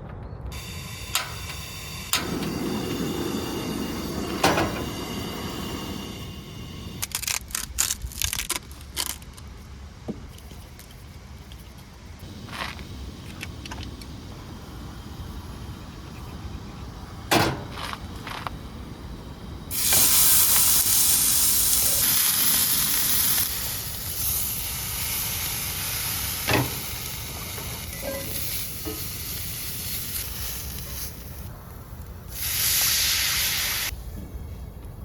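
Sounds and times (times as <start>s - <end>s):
food sizzling in a frying pan: 19.7s - 30.7s.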